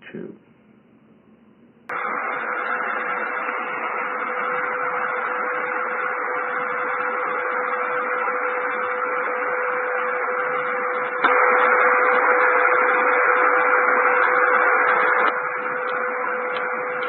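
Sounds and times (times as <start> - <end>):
faint steady radio tone: 1.9 - 17.0
radio static hiss: 1.9 - 17.0.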